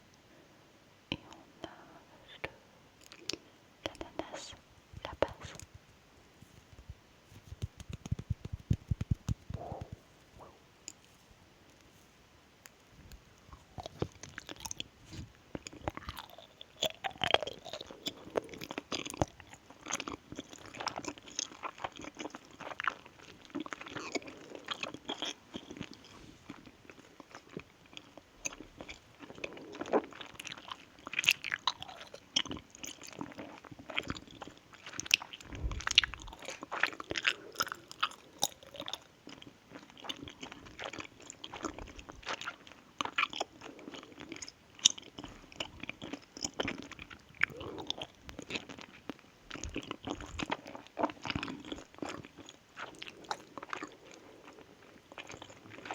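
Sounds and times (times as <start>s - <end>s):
wet mouth noises: 3.0s - 12.0s, 23.7s - 55.9s
person chewing crunchy food: 6.4s - 12.1s, 12.7s - 55.9s.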